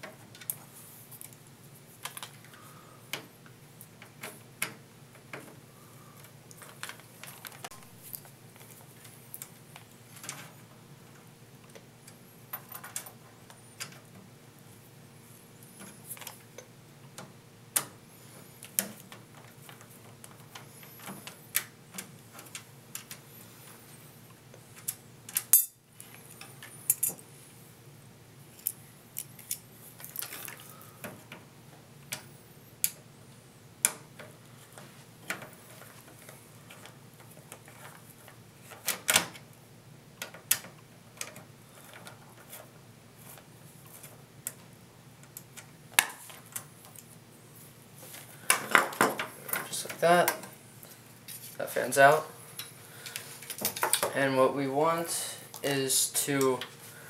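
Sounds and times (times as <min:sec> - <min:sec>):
small screws clinking: 0:25.3 - 0:27.2.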